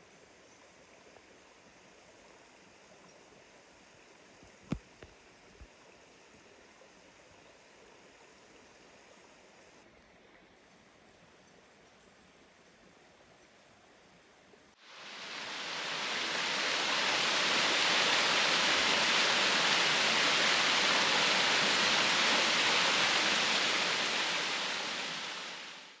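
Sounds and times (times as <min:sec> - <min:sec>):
rush of flowing water: 0:14.7 - 0:26.0.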